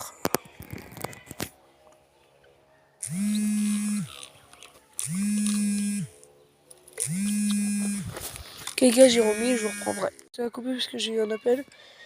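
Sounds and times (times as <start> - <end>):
mobile phone buzzing: 3.0 - 4.2, 5.0 - 6.2, 7.0 - 8.3, 9.0 - 10.3.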